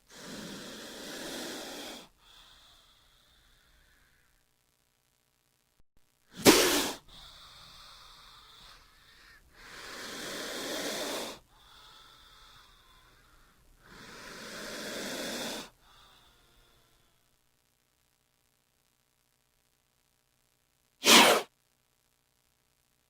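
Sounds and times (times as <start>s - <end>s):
snake hissing: 0.1s - 4.2s, 6.3s - 16.7s, 21.0s - 21.5s.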